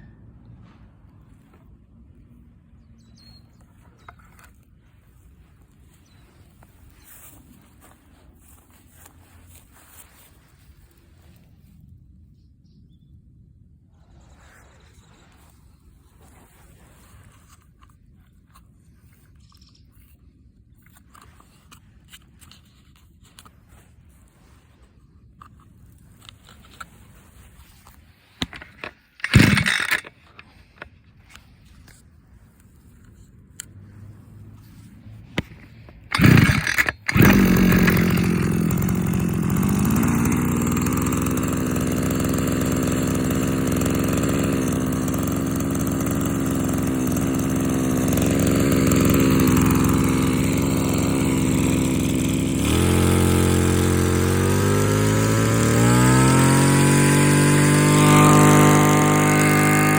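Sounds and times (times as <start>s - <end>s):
recoil starter pulls: 25.4s - 32.0s, 33.6s - 59.9s
small engine idling and revving: 28.4s - 59.9s.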